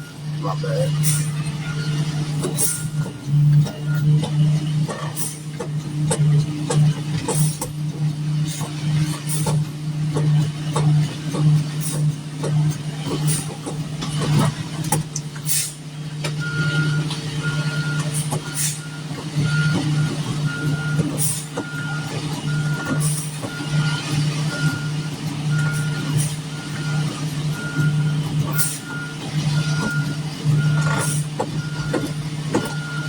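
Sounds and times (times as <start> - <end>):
reversing alarm beeping: 0.0 - 5.6, 16.3 - 33.0
diesel engine running: 0.0 - 33.0.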